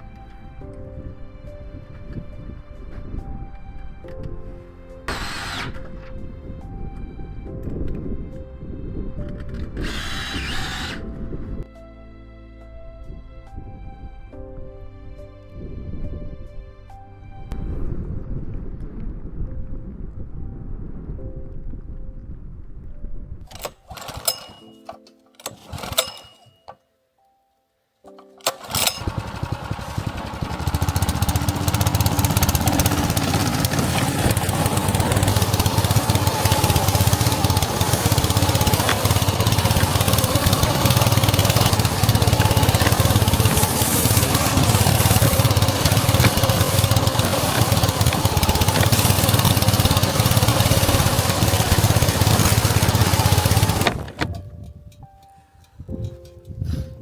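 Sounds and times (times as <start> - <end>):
blizzard wind buffeting microphone: 0.0 - 5.0, 5.6 - 10.0, 12.8 - 23.5, 29.0 - 55.1
small engine running: 5.1 - 6.0, 9.8 - 11.0, 23.5 - 24.7, 28.4 - 54.4
small engine starting click: 5.1 - 6.2, 9.3 - 11.1, 23.5 - 26.7, 28.1 - 55.1.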